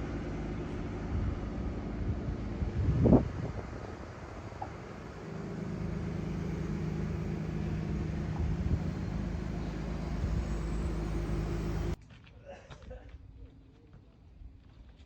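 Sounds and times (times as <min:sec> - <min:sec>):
engine running steadily: 0:00.0 - 0:12.0.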